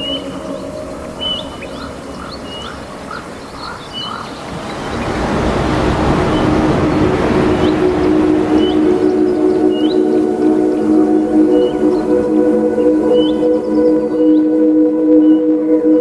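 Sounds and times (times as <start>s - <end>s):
birds chirping: 0.0s - 14.6s
hiss of rain: 0.1s - 13.6s
steady low hum: 4.2s - 15.1s.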